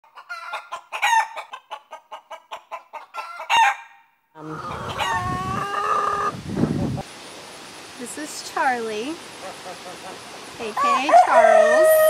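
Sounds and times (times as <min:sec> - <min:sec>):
rooster clucking: 0:00.0 - 0:03.8, 0:04.4 - 0:07.0
rooster crowing: 0:10.8 - 0:12.0.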